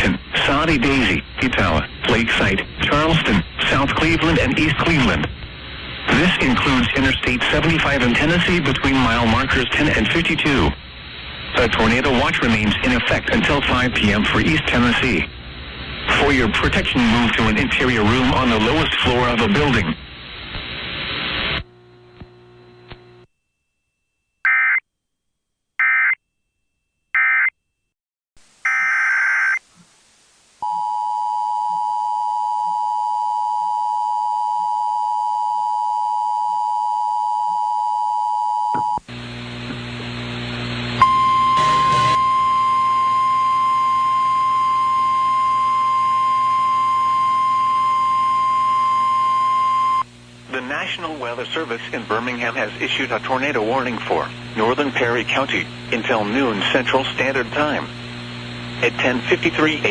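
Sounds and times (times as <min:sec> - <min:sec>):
hum: 0:00.0 - 0:24.1, 0:29.6 - 0:59.9
data burst tones: 0:41.0 - 0:50.0
steady high alarm tone: 0:41.0 - 0:50.0
two-tone attention signal: 0:41.0 - 0:50.0.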